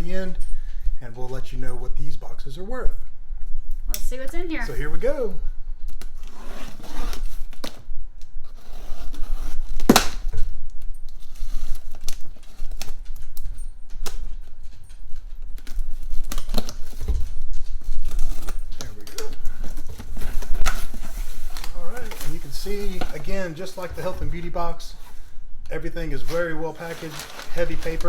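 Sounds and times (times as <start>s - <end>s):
packing paper rustling: 8.5s - 25.4s, 26.0s - 28.0s.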